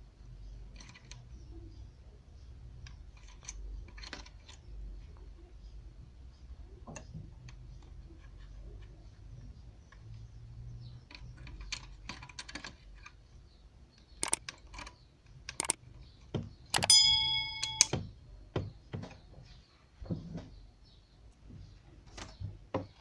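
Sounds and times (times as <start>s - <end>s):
hand tools clicking and tapping: 14.2s - 19.2s
short metallic ring: 16.8s - 18.0s.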